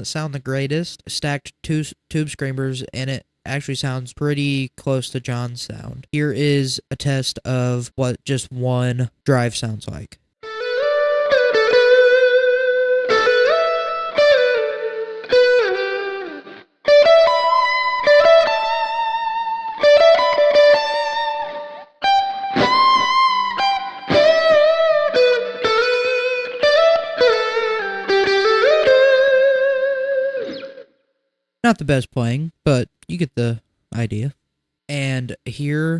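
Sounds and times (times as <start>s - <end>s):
overdriven electric guitar lead: 10.4s - 30.9s.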